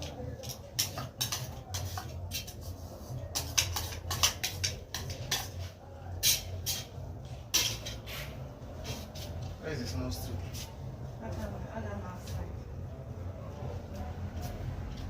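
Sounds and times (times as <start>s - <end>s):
cooking clicks and knocks: 0.0s - 2.5s, 3.3s - 5.6s.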